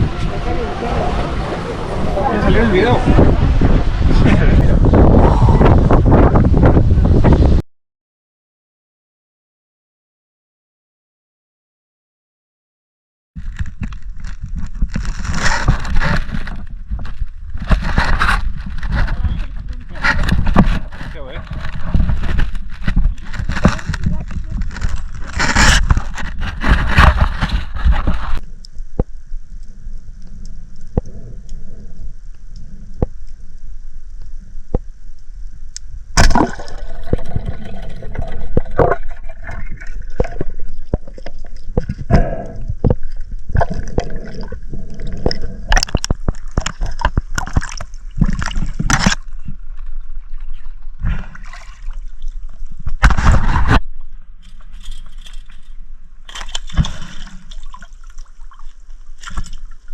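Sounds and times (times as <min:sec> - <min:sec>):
water sloshing and gurgling: 0:13.4 - 0:59.9
water splashes: 0:36.1 - 0:55.6, 0:56.2 - 0:59.9.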